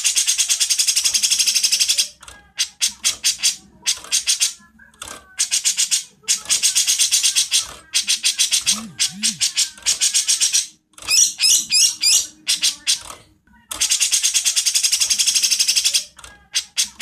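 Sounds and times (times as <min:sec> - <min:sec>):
songbirds chattering harshly: 0:05.4 - 0:13.2.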